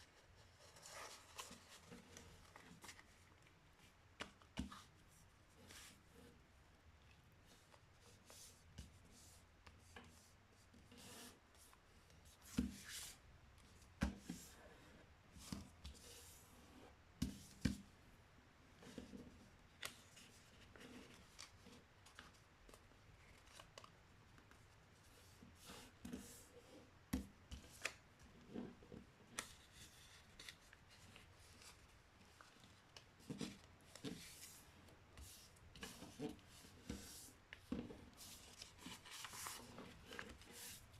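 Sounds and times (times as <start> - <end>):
paper rustling and creasing: 0.1 - 3.6, 29.3 - 40.9.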